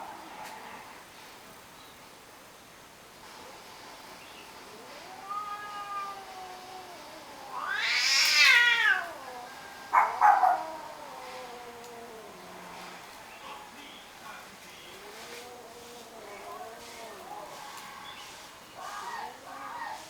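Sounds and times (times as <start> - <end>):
cats yowling: 4.7 - 13.1, 14.9 - 17.6, 18.8 - 20.0
cat growling: 4.7 - 13.5, 14.9 - 17.6, 18.8 - 20.0.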